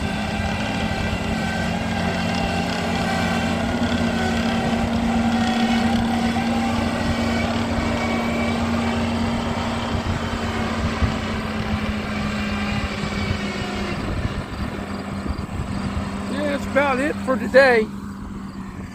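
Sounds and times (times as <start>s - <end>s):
earth-moving machine engine running: 0.0s - 18.9s.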